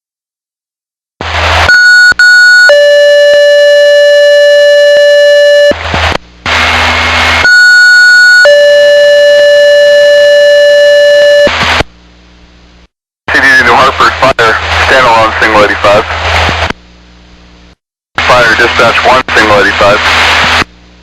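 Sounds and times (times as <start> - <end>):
radio static burst: 1.2 - 2.7, 5.7 - 8.4, 11.5 - 11.9, 13.3 - 16.8, 18.2 - 20.7.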